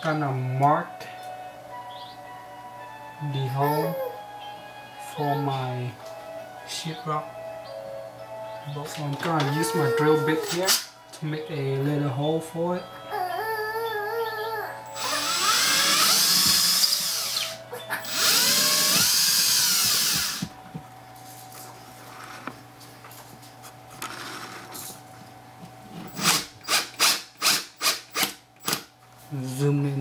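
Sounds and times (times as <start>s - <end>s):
electric drill boring: 14.9s - 20.5s, 26.1s - 28.8s.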